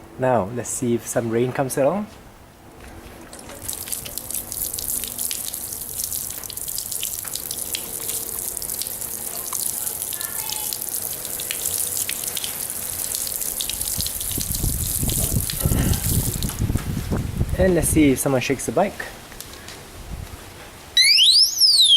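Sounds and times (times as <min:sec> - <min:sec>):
water splashing on a bicycle: 0:03.0 - 0:17.6.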